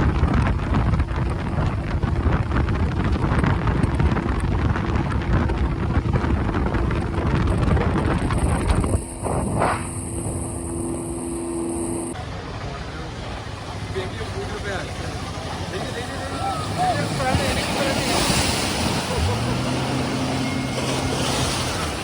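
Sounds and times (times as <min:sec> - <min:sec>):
wind buffeting microphone: 0:00.0 - 0:12.2
boat engine running: 0:00.0 - 0:22.0
rushing water: 0:12.1 - 0:22.0.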